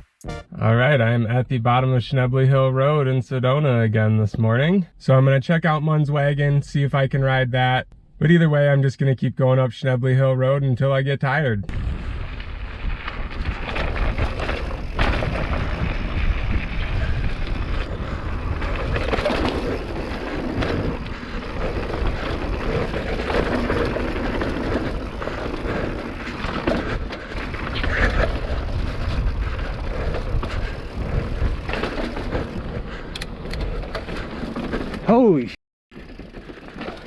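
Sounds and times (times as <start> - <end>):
wind on microphone: 11.7 - 34.0
bike tyres on dirt: 11.7 - 37.0
bike rattling and knocking: 12.4 - 35.2, 35.9 - 37.0.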